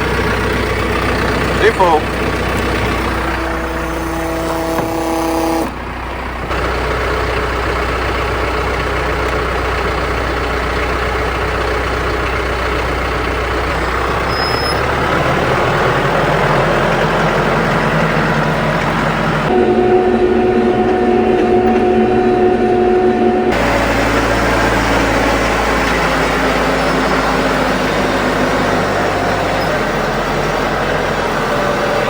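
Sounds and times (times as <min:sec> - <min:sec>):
diesel tractor engine running: 0:00.0 - 0:32.0
pitched tone: 0:19.5 - 0:28.0.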